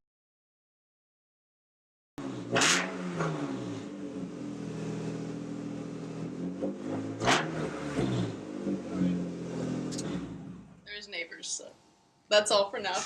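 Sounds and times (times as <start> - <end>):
car engine idling with throttle blips: 2.2 - 11.2.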